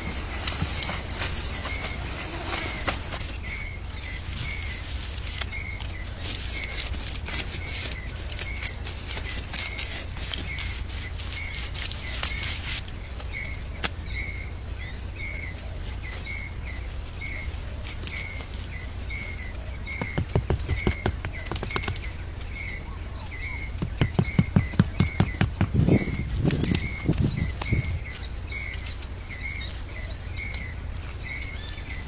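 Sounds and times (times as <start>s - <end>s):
small bird chirping: 0.0s - 32.0s
steady low rumble: 0.0s - 32.0s
sharp clicks: 20.0s - 22.2s.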